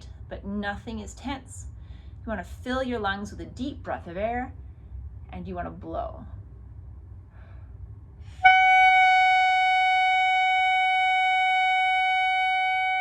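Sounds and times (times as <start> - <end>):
short breath: 1.8 - 2.2, 7.3 - 8.4
clarinet mouthpiece high note: 8.4 - 13.0.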